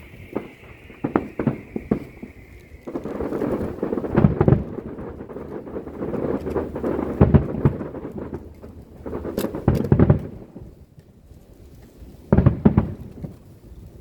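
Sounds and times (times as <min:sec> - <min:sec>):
fireworks booming: 0:00.0 - 0:11.0, 0:12.2 - 0:14.0.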